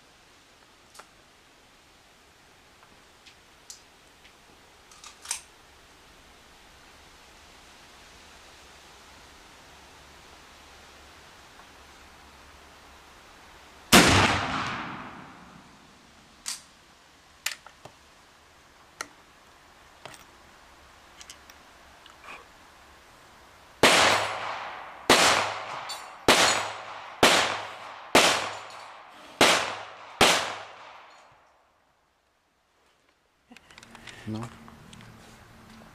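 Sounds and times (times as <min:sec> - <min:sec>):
sharp gunshots: 0:13.9 - 0:15.7, 0:23.8 - 0:31.1
rifle shot: 0:13.9 - 0:15.8, 0:23.8 - 0:31.2.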